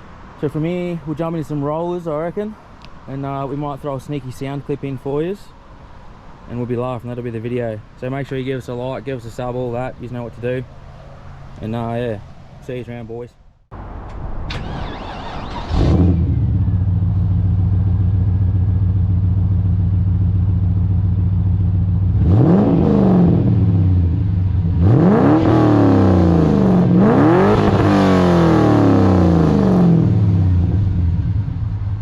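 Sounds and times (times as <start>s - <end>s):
car engine idling: 13.8s - 25.2s, 28.7s - 32.0s
car engine revving: 14.5s - 32.0s.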